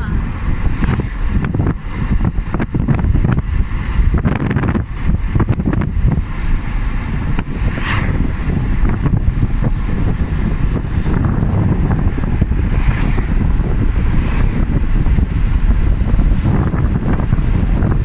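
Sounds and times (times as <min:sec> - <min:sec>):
wind buffeting microphone: 0:00.0 - 0:18.0.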